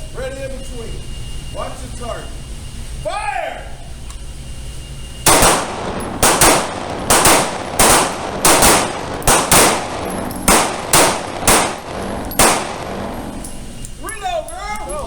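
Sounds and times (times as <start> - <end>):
pistol shots echoing: 5.3 - 13.8.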